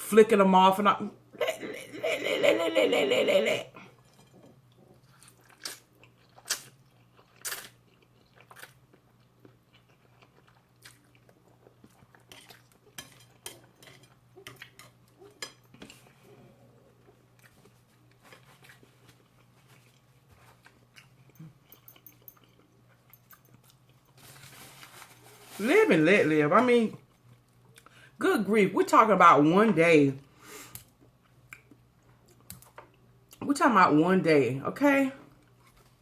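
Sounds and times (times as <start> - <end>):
person chewing: 4.0 - 24.2.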